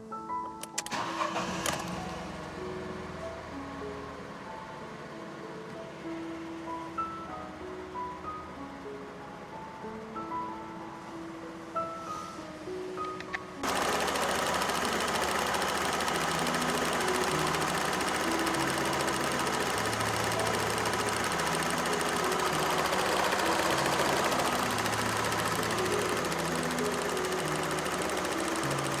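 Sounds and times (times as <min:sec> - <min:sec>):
car engine running: 0:13.6 - 0:29.0
fast even engine ticking: 0:13.6 - 0:29.0.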